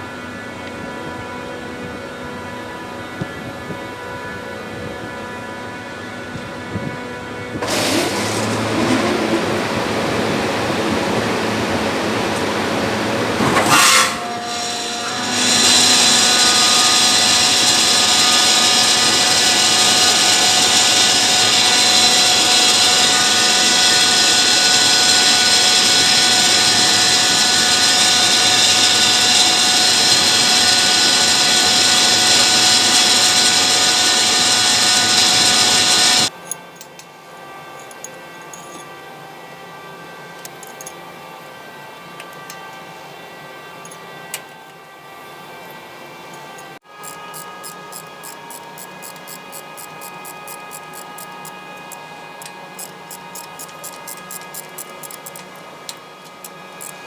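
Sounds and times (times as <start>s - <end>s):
steady compressor tones: 0.0s - 36.3s
screw compressor running with hiss: 7.6s - 37.0s, 46.3s - 57.0s.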